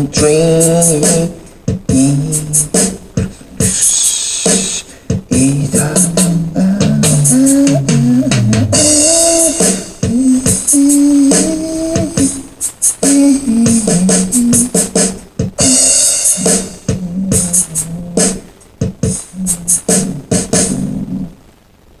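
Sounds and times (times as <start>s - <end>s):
drum machine beat: 0.0s - 21.1s
low stepping melody: 5.1s - 12.5s.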